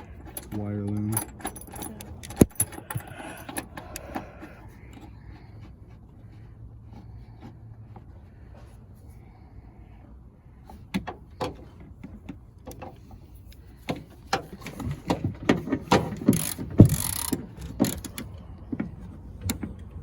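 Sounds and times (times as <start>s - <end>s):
small parts clinking and rattling: 0.0s - 5.6s, 12.1s - 18.4s.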